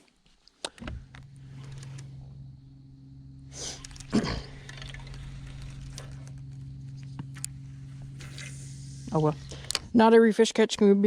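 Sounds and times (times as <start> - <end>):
steady low hum: 0.0 - 11.0
loud noisy burst: 1.4 - 9.9.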